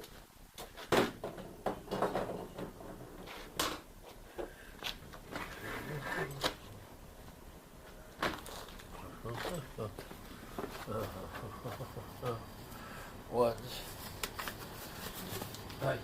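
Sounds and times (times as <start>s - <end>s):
objects knocking and rattling: 0.9s - 3.9s.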